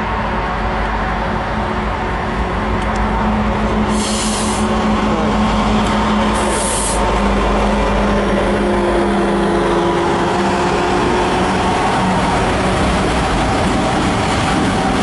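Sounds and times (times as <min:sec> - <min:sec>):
freight train passing: 0:00.0 - 0:15.0
short bursts of hiss: 0:03.9 - 0:04.7.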